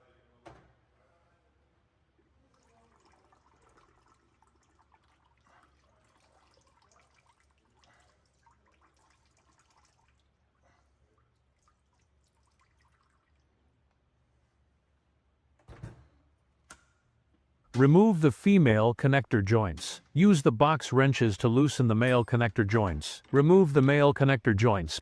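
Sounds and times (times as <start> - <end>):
liquid trickling: 2.4 - 13.8
liquid dripping into container: 2.5 - 10.4, 11.2 - 13.6.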